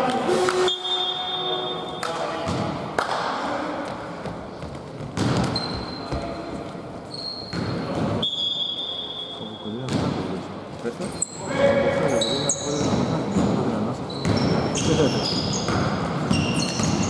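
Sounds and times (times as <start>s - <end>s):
basketball bouncing on wooden floor: 4.2s - 6.3s
short high squeaks: 7.1s - 7.6s.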